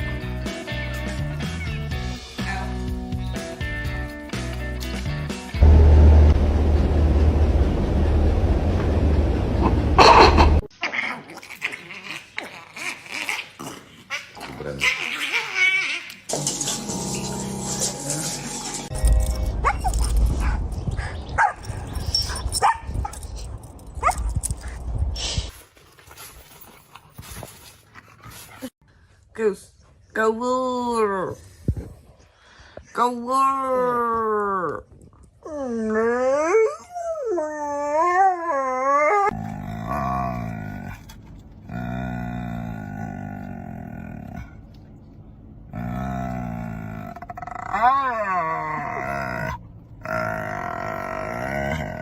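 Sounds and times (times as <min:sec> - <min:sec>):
low rumble: 0:05.6 - 0:10.6, 0:18.9 - 0:25.2
dog yipping: 0:14.1 - 0:16.2, 0:19.6 - 0:20.6, 0:21.4 - 0:22.9
dog howling: 0:35.6 - 0:41.0, 0:45.9 - 0:52.0
low rough animal vocal sounds: 0:39.3 - 0:44.7, 0:45.7 - 0:52.0.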